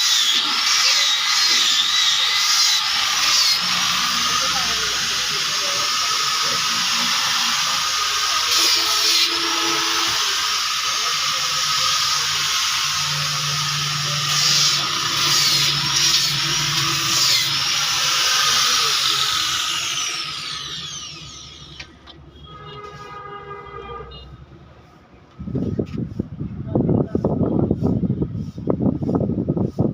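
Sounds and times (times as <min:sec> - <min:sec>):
power tool whining and spinning down: 0:00.0 - 0:22.2.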